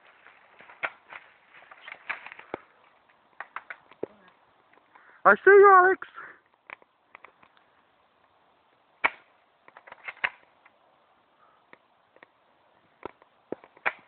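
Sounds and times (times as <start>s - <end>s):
airsoft gun shots: 9.0s - 9.3s.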